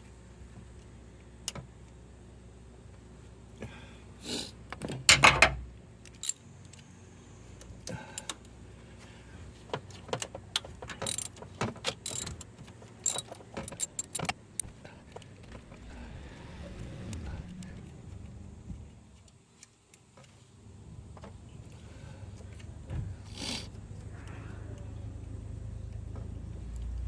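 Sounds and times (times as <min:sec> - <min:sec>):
metal tools clinking: 0:10.9 - 0:15.2.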